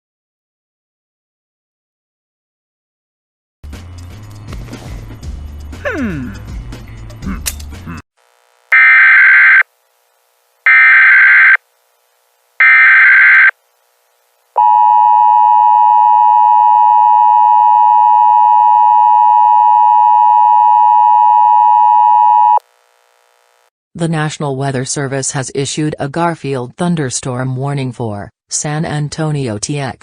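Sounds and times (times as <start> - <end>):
digital data bursts: 8.7 - 9.6, 10.7 - 11.6, 12.6 - 13.5
two-tone alert signal: 8.8 - 9.6, 10.7 - 11.6, 12.6 - 13.5.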